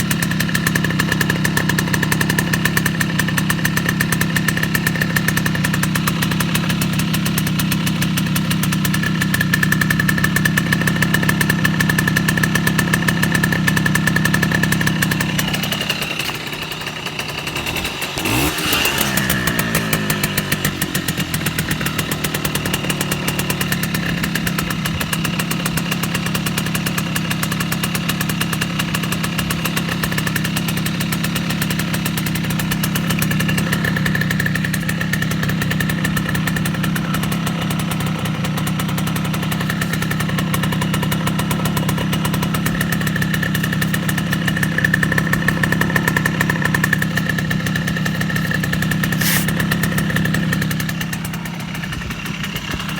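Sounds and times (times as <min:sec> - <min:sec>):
motorcycle horn buzzing drone: 0:17.6 - 0:25.1, 0:32.9 - 0:52.9.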